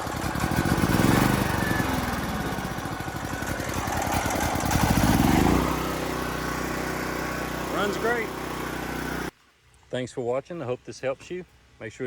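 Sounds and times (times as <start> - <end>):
portable generator engine running: 0.0 - 9.3.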